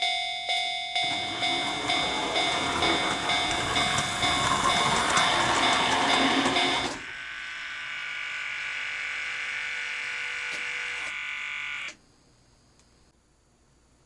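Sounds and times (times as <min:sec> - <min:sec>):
electronic buzzing warning tone: 0:00.7 - 0:12.0
model train clicking on track: 0:01.1 - 0:07.0.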